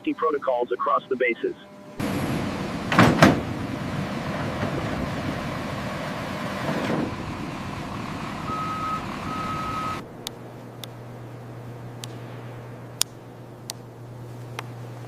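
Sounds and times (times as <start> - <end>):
vehicle running: 0.0 - 15.0
reversing alarm beeps: 8.4 - 10.0.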